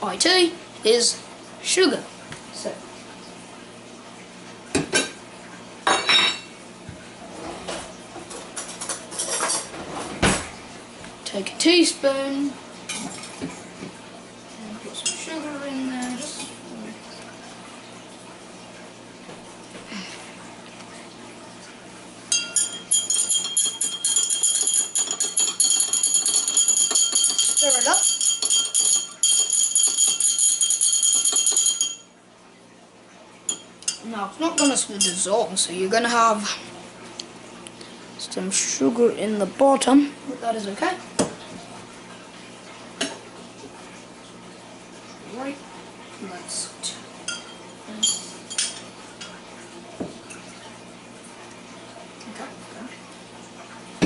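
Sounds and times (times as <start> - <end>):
metal cutlery clinking and clattering: 22.4 - 32.0.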